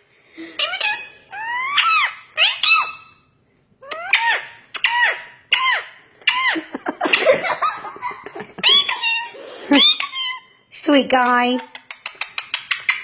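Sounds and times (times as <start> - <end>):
parrot squeaky calls: 0.4 - 7.3, 8.6 - 10.7, 11.6 - 13.0.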